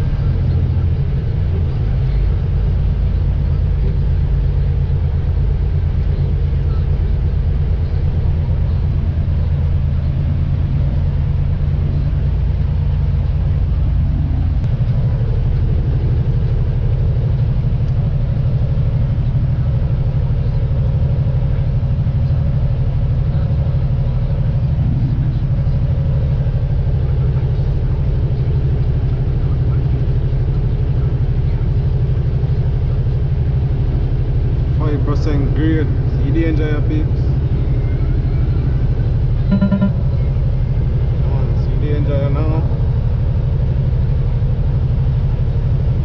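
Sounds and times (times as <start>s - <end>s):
diesel truck engine droning: 0.0s - 46.0s.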